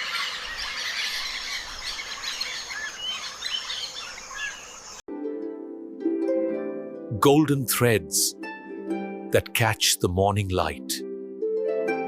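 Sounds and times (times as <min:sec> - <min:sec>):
bird chirps: 0:00.0 - 0:05.0
plucked-string music: 0:05.1 - 0:12.0.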